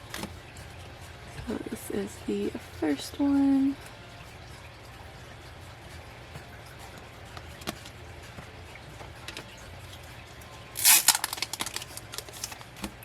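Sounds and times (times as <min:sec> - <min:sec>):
quick small crackles: 0:10.8 - 0:12.6
packaging crinkling rustle: 0:10.8 - 0:13.0.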